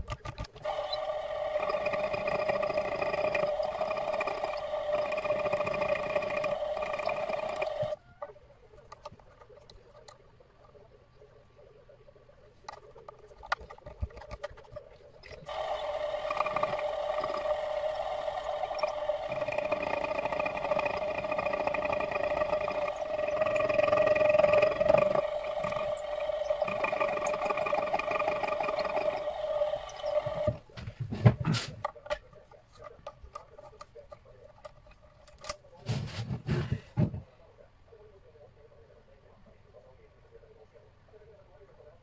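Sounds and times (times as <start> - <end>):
milling machine motor whining: 0.0 - 8.0, 15.2 - 30.8.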